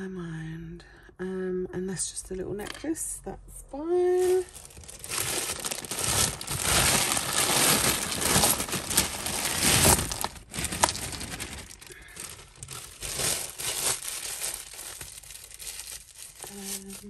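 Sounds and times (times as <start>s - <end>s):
plastic bag crinkling: 4.1s - 17.0s.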